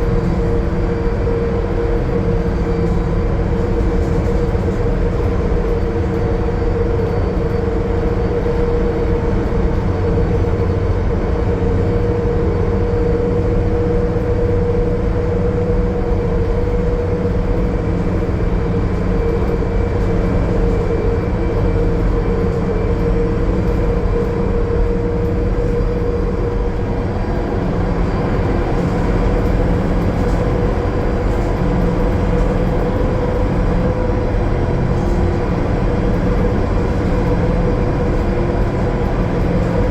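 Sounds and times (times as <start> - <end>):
bus engine and road rumble: 0.0 - 39.9
mid-pitched whine: 11.5 - 39.9.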